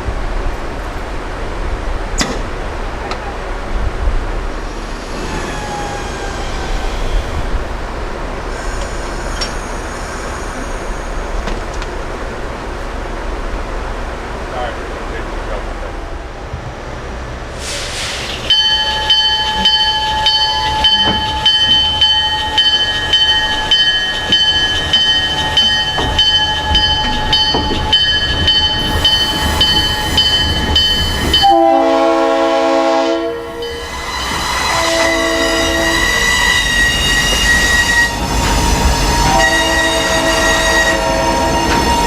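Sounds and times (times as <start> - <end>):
train low rumble: 0.0 - 42.0
bell ringing: 18.5 - 31.6
locomotive air horn: 31.4 - 33.6, 34.7 - 38.3, 39.0 - 42.0.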